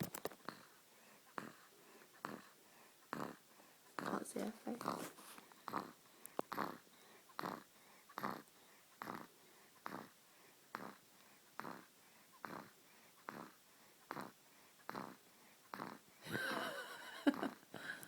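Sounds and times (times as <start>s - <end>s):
baby snoring faintly: 0.4s - 16.6s.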